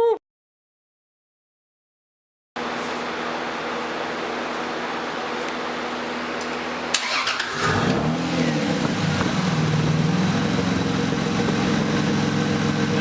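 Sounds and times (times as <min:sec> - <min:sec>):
car engine cranking and idling: 0:06.9 - 0:13.0.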